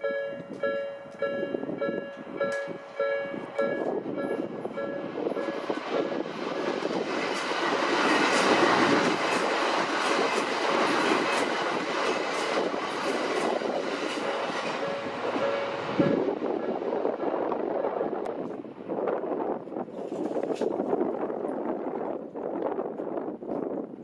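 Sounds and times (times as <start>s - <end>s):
crossing warning bell: 0.0s - 6.9s, 10.2s - 18.2s
electric train passing: 0.0s - 21.9s
train wheels clacking over rail joints: 3.6s - 16.2s.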